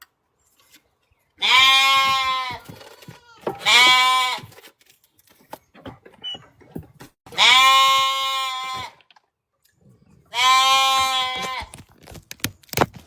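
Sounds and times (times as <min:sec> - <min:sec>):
goats bleating: 0:01.4 - 0:04.5, 0:07.3 - 0:09.0, 0:10.3 - 0:11.8
small clicks and rustles: 0:11.3 - 0:13.0.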